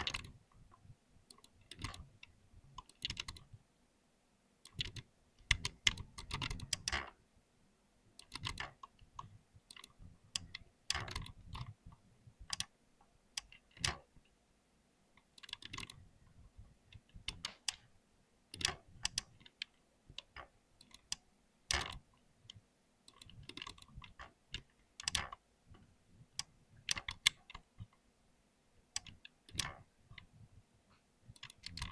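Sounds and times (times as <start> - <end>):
computer keyboard typing: 2.8 - 3.4.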